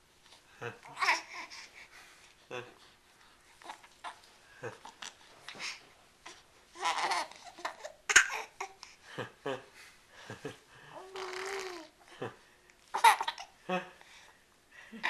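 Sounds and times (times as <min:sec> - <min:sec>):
baby cooing and babbling: 0:00.8 - 0:01.6, 0:05.6 - 0:08.8, 0:11.0 - 0:12.0.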